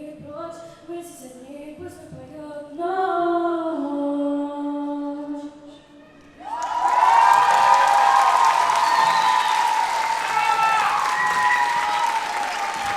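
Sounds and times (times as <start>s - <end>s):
applause: 6.4s - 12.9s.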